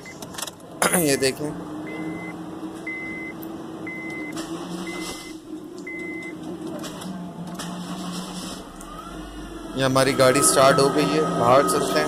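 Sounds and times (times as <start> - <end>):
car engine running: 0.0 - 12.0
dashboard warning chime beeping: 1.1 - 6.4.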